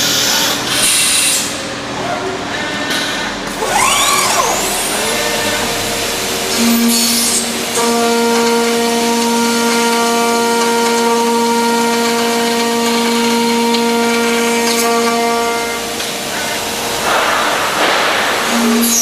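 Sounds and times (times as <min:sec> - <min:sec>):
machining centre whine: 0:00.0 - 0:19.0
rush of noise: 0:01.8 - 0:08.4, 0:16.0 - 0:19.0.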